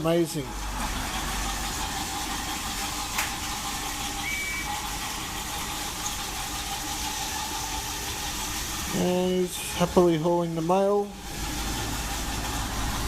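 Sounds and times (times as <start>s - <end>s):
steam chuffing sound effect: 0.5s - 9.6s.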